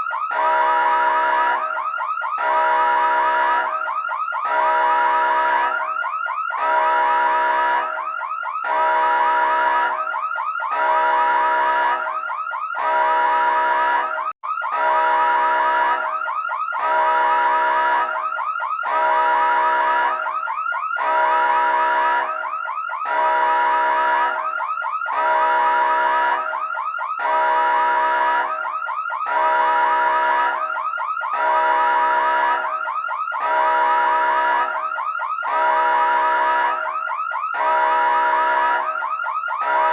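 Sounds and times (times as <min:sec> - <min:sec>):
electronic emergency siren: 0:00.0 - 0:39.9.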